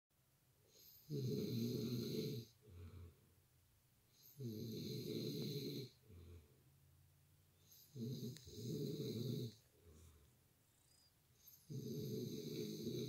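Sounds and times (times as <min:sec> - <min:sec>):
man snoring loudly: 0:00.8 - 0:02.9, 0:04.3 - 0:06.0, 0:07.7 - 0:09.6, 0:11.4 - 0:13.0
soft breath: 0:02.6 - 0:03.3, 0:06.0 - 0:06.9, 0:09.2 - 0:11.7.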